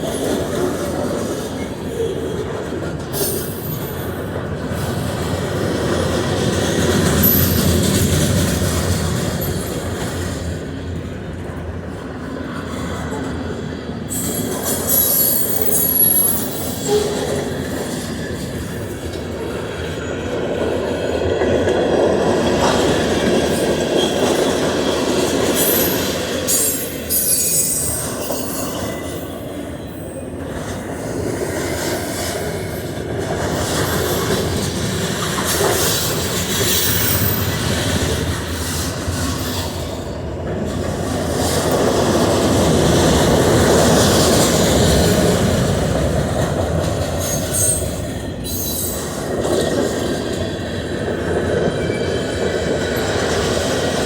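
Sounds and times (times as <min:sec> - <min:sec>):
train wheel squeals: 0:00.0 - 0:10.4, 0:12.7 - 0:20.8, 0:22.4 - 0:54.0
freight train rumbling and clacking: 0:00.0 - 0:54.0.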